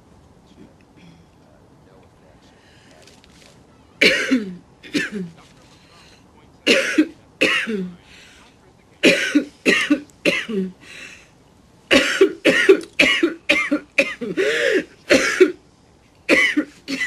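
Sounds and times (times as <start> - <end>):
woman coughing: 4.0 - 5.3, 6.7 - 8.0, 9.0 - 10.8, 11.9 - 15.6, 16.3 - 17.0.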